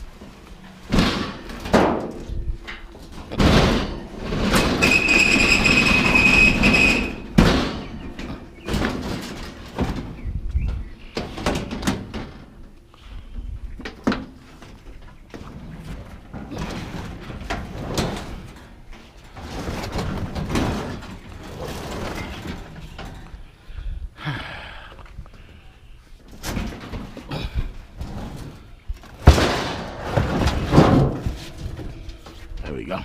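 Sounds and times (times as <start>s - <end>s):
sheet metal scraping and knocking: 0.9s - 10.2s, 29.2s - 32.6s
loud metal bang: 29.2s - 32.4s.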